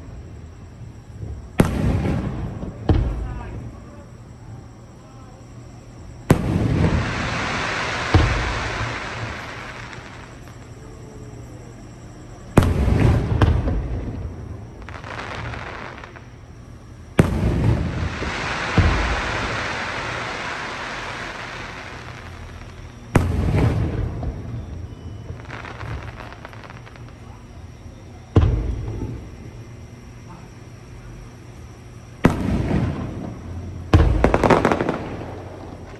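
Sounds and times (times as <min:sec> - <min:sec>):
fireworks bursting: 0:01.0 - 0:04.9, 0:06.0 - 0:29.5, 0:31.6 - 0:35.9.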